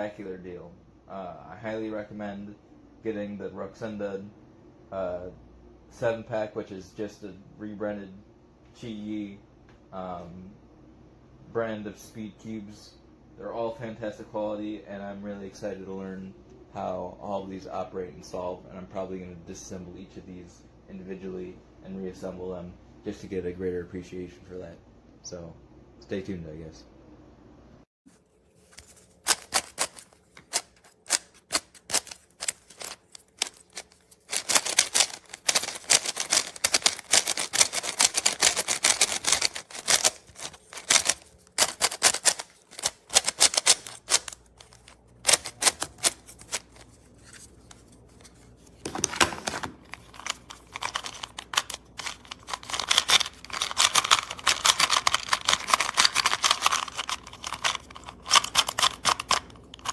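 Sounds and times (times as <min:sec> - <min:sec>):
plastic puzzle cube clicking: 0:29.3 - 0:46.8, 0:49.0 - 0:59.9.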